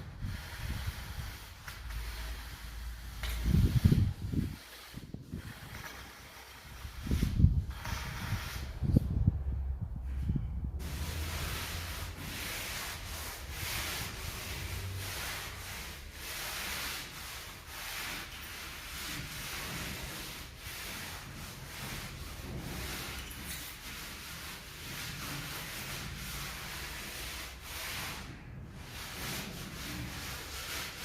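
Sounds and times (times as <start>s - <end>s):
steel trowel scraping mortar: 0.2s - 8.9s, 10.9s - 28.2s.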